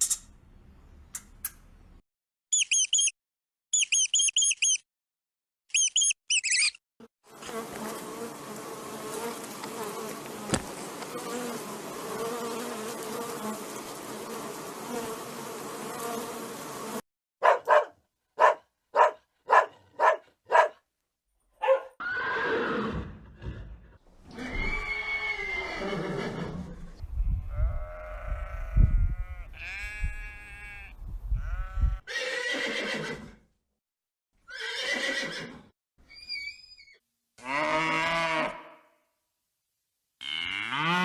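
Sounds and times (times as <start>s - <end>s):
bees buzzing: 7.3s - 17.0s
wavering falling animal call: 24.3s - 26.7s.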